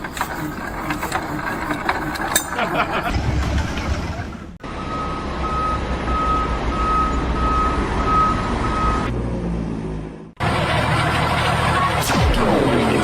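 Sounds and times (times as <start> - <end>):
heavy vehicle engine rumbling: 0.0 - 13.0
reversing alarm beeping: 4.6 - 9.1.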